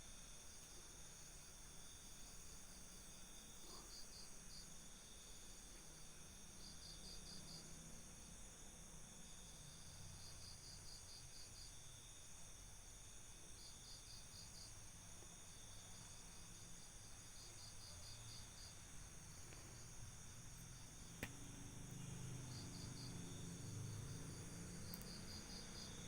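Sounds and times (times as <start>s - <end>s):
insect chirping in pulses: 15.5s - 26.0s
insect chorus trilling: 17.1s - 26.0s.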